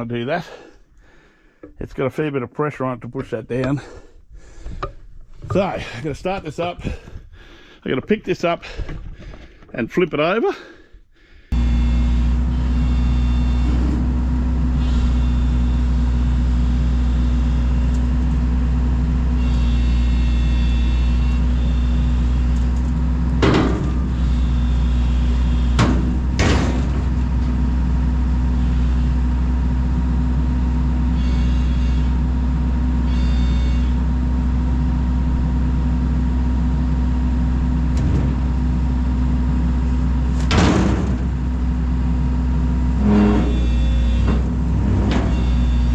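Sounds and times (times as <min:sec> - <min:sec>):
excavator diesel engine running: 0:11.5 - 0:45.9
hydraulic whine: 0:11.5 - 0:45.9
sharp metal clunks: 0:23.4 - 0:24.2, 0:25.7 - 0:27.2, 0:40.4 - 0:41.4.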